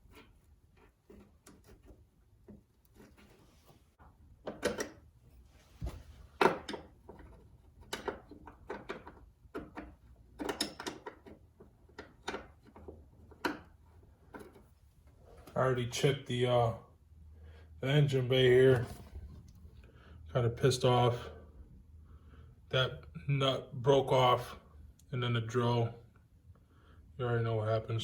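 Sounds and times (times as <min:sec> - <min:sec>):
hand tools clicking and knocking: 0:06.4 - 0:14.7.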